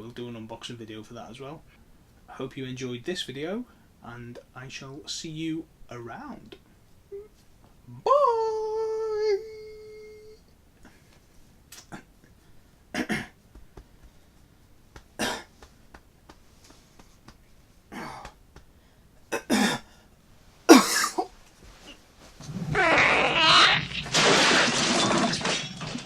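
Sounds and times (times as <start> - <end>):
person coughing: 13.0 - 13.3, 15.2 - 15.5, 19.3 - 19.9, 20.7 - 21.3
person clearing throat: 13.0 - 13.4, 15.2 - 15.5, 19.3 - 19.8, 20.7 - 21.3.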